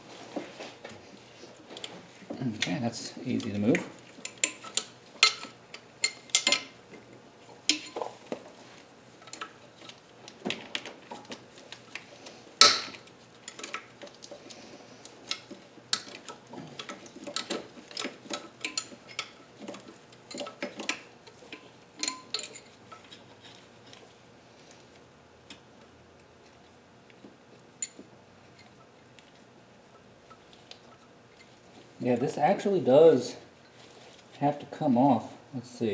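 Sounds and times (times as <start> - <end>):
wrench clinking against metal: 3.4 - 6.8, 7.7 - 8.0, 21.5 - 23.2.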